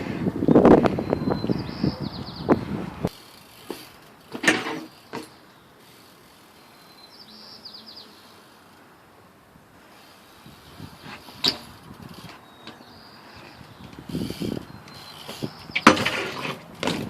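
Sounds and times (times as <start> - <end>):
songbird singing: 0.4 - 3.8, 4.9 - 9.3, 10.3 - 16.0.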